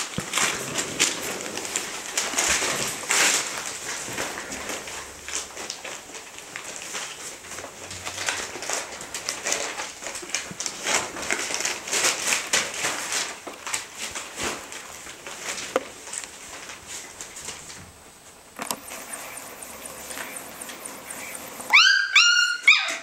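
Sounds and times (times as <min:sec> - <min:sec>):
puppies scuffling and scratching: 0:00.0 - 0:18.0, 0:20.9 - 0:23.0
puppy noises: 0:18.8 - 0:23.0.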